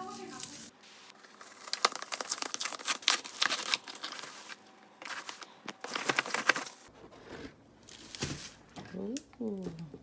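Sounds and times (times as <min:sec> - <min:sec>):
packaging crinkling: 0:00.1 - 0:06.9.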